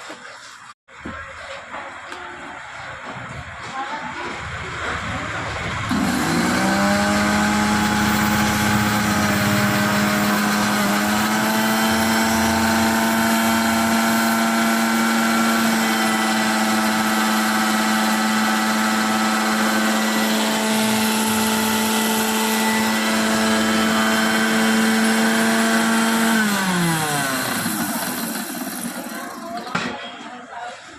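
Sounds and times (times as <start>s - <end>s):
mixer grinder motor whining: 5.9s - 29.7s.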